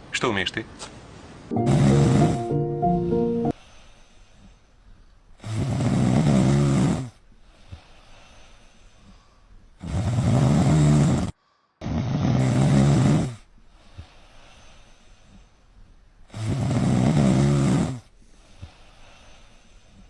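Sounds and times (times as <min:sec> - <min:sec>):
quiet breathing: 0:03.5 - 0:05.8, 0:07.0 - 0:10.2, 0:11.2 - 0:11.9, 0:13.3 - 0:16.6, 0:17.9 - 0:20.0
person snoring loudly: 0:05.4 - 0:07.1, 0:09.8 - 0:13.4, 0:16.4 - 0:18.0.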